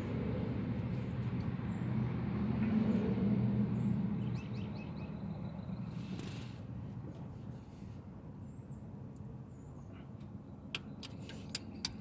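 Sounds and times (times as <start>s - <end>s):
passing vehicle rumble: 0.0s - 7.1s.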